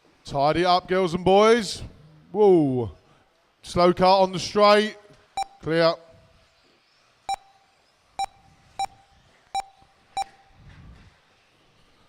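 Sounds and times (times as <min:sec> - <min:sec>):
lap timer short beeps: 0:05.4 - 0:05.6, 0:07.3 - 0:07.6, 0:08.2 - 0:10.5.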